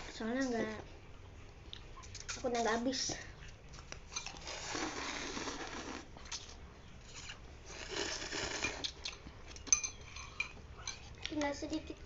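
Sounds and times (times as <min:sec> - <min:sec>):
slurping noodles: 0:04.2 - 0:09.0
spoon clinking against bowl: 0:09.7 - 0:11.0.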